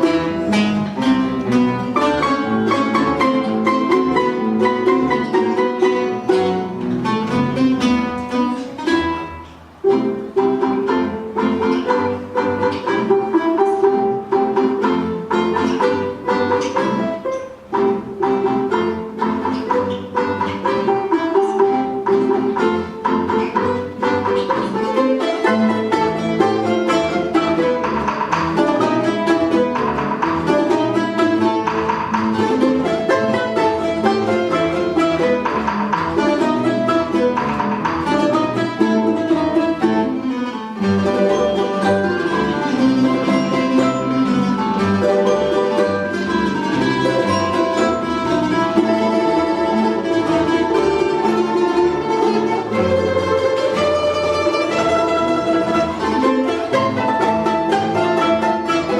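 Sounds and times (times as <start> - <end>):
folk ensemble plucked strings: 0.0 - 58.9.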